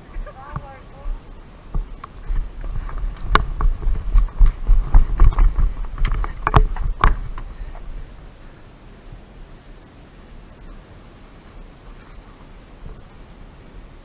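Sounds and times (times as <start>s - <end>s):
thumps: 0.2s - 7.9s.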